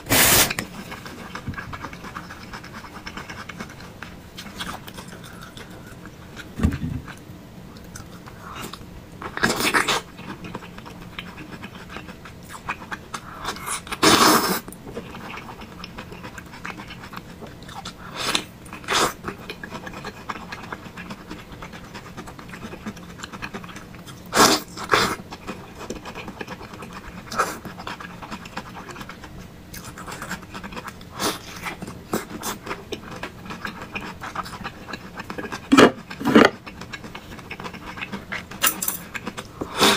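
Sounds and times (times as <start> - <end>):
noodle slurping: 0.0 - 1.1
faint steady hum: 0.0 - 39.9.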